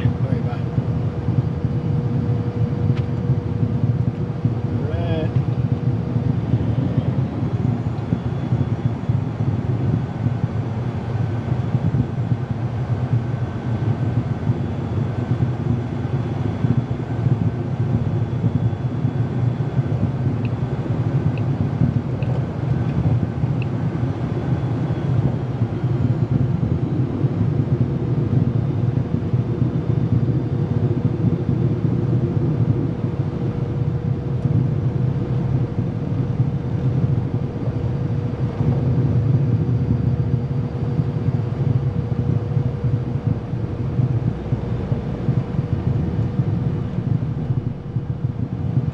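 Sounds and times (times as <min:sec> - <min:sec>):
faint engine whining tones: 0:00.0 - 0:48.9
jet engines idling rumble: 0:00.0 - 0:48.9.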